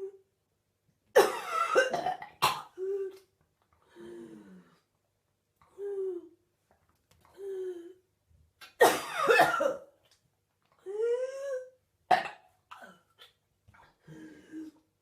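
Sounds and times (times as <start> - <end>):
woman coughing: 1.2 - 2.8, 8.8 - 9.9.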